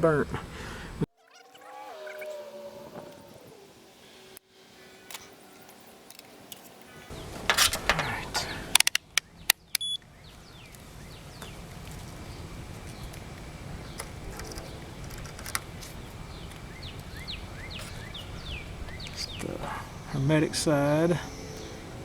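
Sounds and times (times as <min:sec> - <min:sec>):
birds chirping: 0:00.0 - 0:22.0
multimeter clicks: 0:08.7 - 0:10.1.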